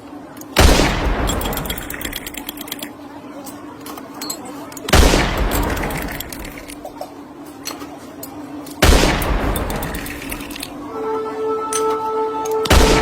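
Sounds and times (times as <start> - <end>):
loud gunshot: 0.6 - 2.0, 4.9 - 6.4, 8.8 - 10.5, 12.7 - 13.0.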